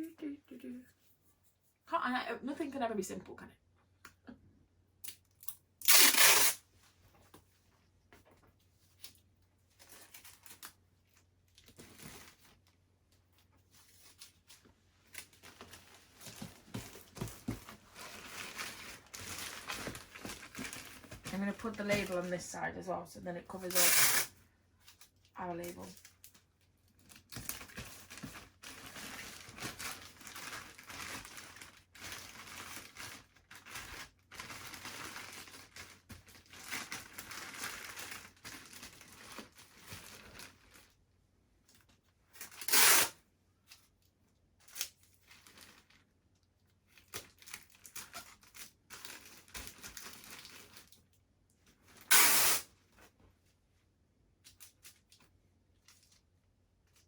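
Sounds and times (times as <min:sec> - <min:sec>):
tape ripping off roll: 0:05.8 - 0:06.6, 0:23.7 - 0:24.3, 0:42.5 - 0:43.2, 0:52.0 - 0:52.7
plastic bag rustling: 0:13.6 - 0:22.4, 0:27.0 - 0:41.0, 0:45.2 - 0:46.1, 0:47.0 - 0:51.0.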